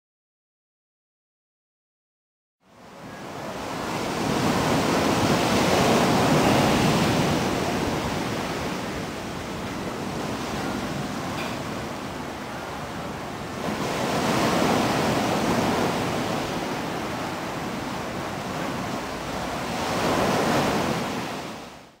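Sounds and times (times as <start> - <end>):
ocean waves washing: 2.7 - 22.0.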